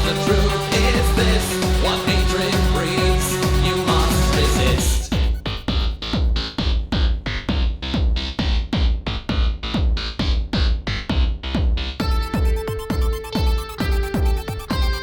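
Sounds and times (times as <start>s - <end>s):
synth stabs: 0.0s - 7.0s, 12.0s - 15.0s
electronic music: 0.0s - 7.5s, 12.0s - 15.0s
fast kick-drum beat: 0.0s - 15.0s.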